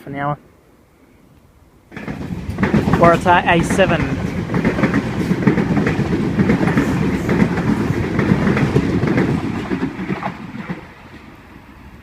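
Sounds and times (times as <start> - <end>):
rumble of train cars: 0.6 - 12.0
train wheels clattering over rail joints: 1.9 - 11.0.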